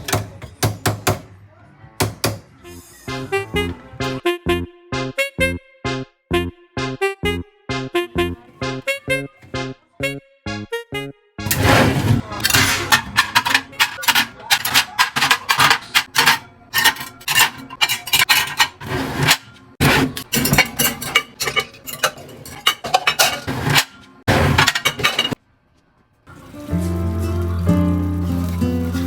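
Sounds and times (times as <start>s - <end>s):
dishes and cutlery clattering: 11.5s - 25.4s.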